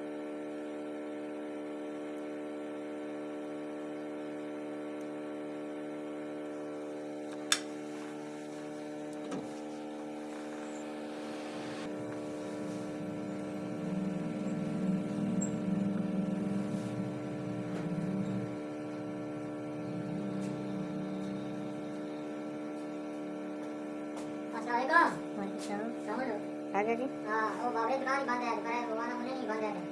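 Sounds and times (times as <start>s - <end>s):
electrical hum: 0.0s - 29.9s
low buzz: 5.0s - 24.6s.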